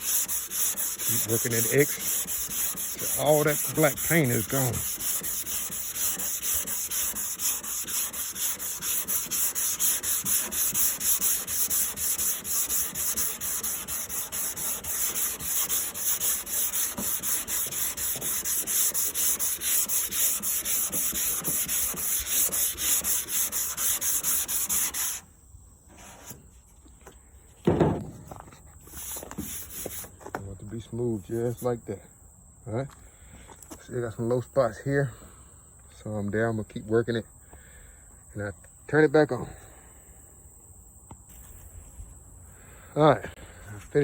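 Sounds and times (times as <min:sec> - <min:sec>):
sandpaper scrubbing on metal: 0:00.0 - 0:25.2, 0:25.9 - 0:26.4, 0:28.8 - 0:30.2.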